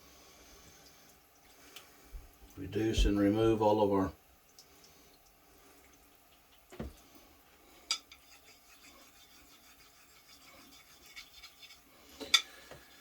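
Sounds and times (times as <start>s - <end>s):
light rubbing: 8.1s - 12.4s.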